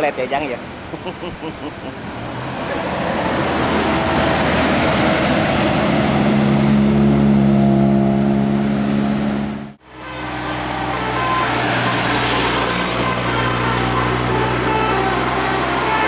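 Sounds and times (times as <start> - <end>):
vehicle engine droning: 2.0 - 16.0.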